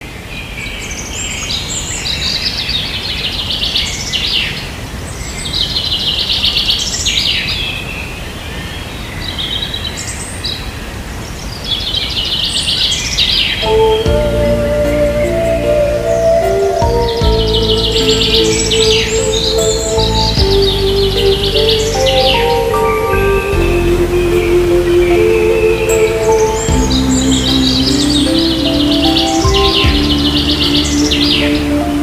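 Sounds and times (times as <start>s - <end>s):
bird singing trills: 12.2s - 32.0s
music: 13.6s - 32.0s.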